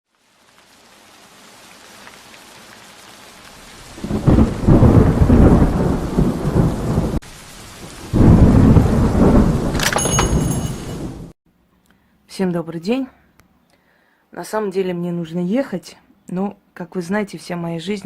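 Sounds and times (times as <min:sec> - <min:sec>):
steady rain: 0:00.1 - 0:11.4
thunder rumbling: 0:03.6 - 0:11.3.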